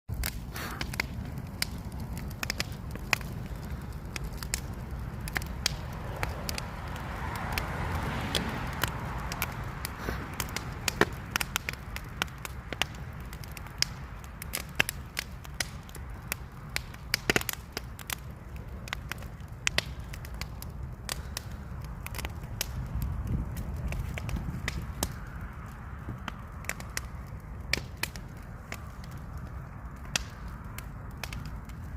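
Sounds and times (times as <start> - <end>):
bonfire crackling and popping: 0.1 - 31.9
low rumble of fire: 0.1 - 31.9.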